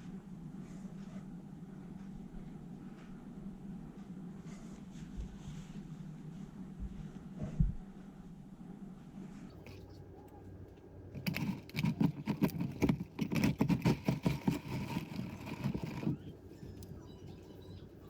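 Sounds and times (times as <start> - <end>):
rapid clicks and knocks: 11.2 - 16.2.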